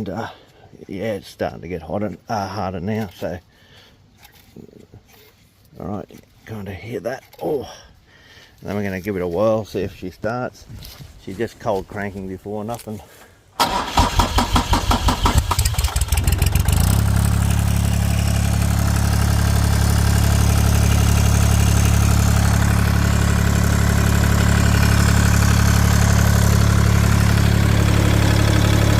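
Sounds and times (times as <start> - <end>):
diesel engine cranking on starter: 13.6 - 28.9
diesel engine idling: 13.6 - 28.9.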